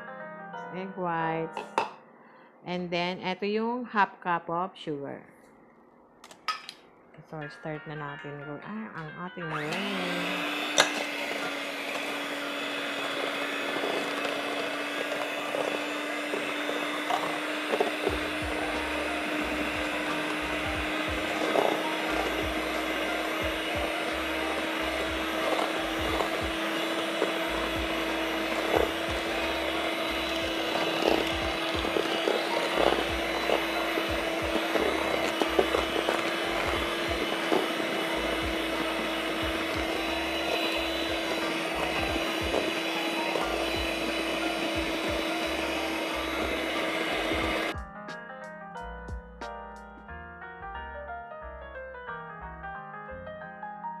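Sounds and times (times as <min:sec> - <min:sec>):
electric mixer motor whine: 0:09.5 - 0:47.8.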